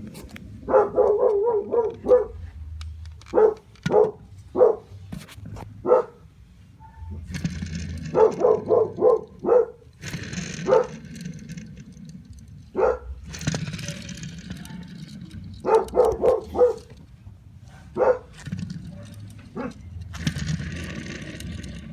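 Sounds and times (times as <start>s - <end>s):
dog barking: 0.7s - 2.4s, 3.3s - 4.9s, 5.8s - 6.2s, 6.8s - 7.2s, 8.1s - 9.8s, 10.6s - 11.0s, 12.8s - 13.1s, 15.6s - 16.9s, 17.7s - 19.8s.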